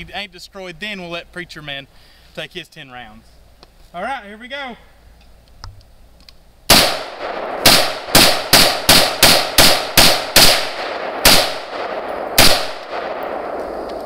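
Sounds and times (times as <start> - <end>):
rifle shots with ringing echo: 6.7 - 14.0.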